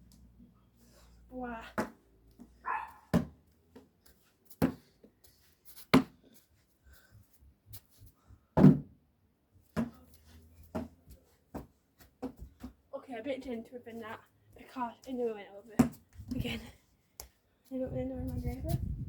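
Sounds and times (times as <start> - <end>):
basketball bouncing on hard ground: 1.7 - 3.4, 4.6 - 4.8, 10.7 - 11.0, 15.8 - 16.4.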